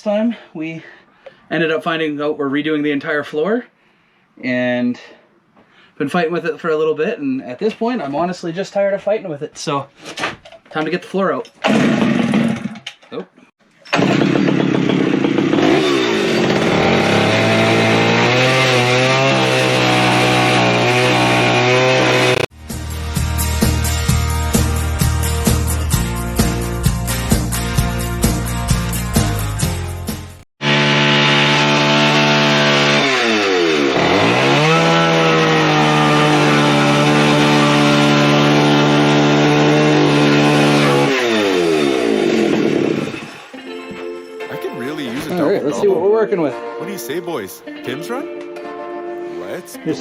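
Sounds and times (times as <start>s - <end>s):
chainsaw running: 11.6s - 12.8s, 13.9s - 22.5s, 30.6s - 43.5s.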